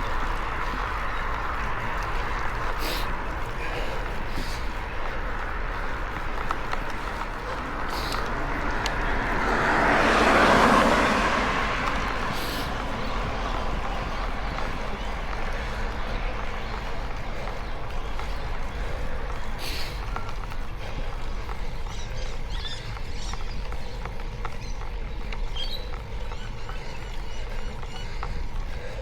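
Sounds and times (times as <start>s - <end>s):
bicycle tyre noise: 0.0s - 29.0s
car passing: 0.0s - 29.0s
wind rush: 0.0s - 29.0s.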